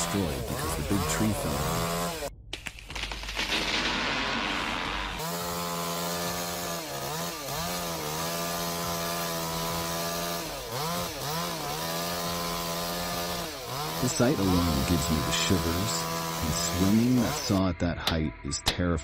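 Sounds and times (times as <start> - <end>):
chainsaw running at high revs: 0.0 - 2.3, 5.1 - 17.6.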